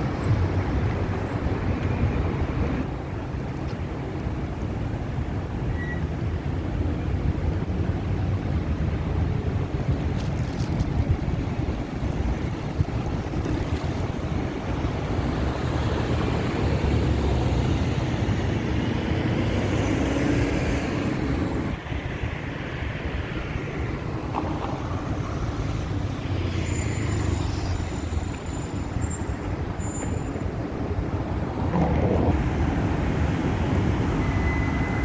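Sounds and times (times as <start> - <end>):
cars and trucks passing: 0.0 - 35.0.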